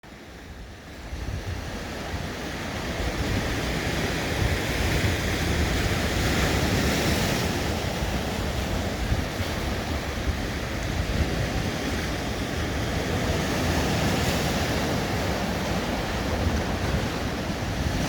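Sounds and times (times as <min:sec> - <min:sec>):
sea waves washing on shore: 0:00.1 - 0:18.0
wind buffeting microphone: 0:00.3 - 0:18.0.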